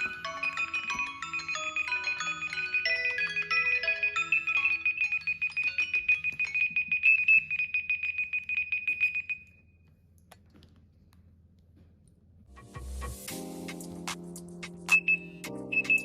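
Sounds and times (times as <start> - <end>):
phone alarm chiming notes: 0.0 - 9.5, 14.9 - 16.0.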